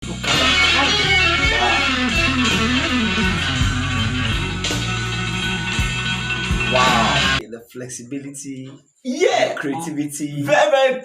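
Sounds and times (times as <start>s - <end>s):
electric guitar lead melody: 0.0s - 7.4s
sustained bass notes: 0.0s - 7.4s.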